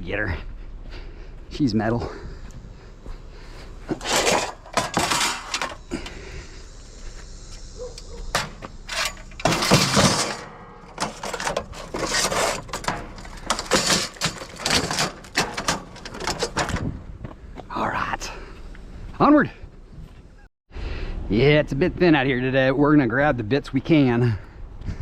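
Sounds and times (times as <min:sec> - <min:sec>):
metal scrap clanking and rattling: 0:03.9 - 0:05.8, 0:08.3 - 0:17.0.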